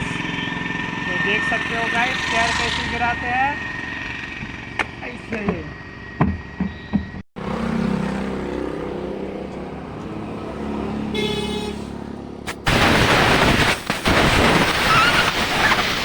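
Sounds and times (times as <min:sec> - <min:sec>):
vehicle running: 0:00.0 - 0:13.9
loud rushing noise: 0:12.5 - 0:16.0.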